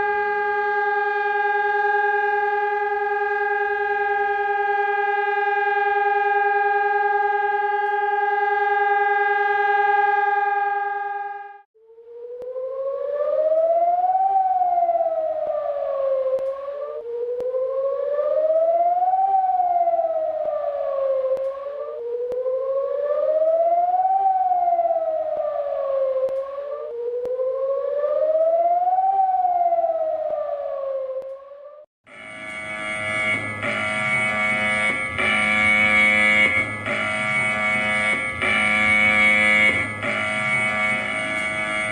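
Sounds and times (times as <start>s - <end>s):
alarm: 0.0s - 41.9s
warning siren wailing: 0.0s - 41.9s.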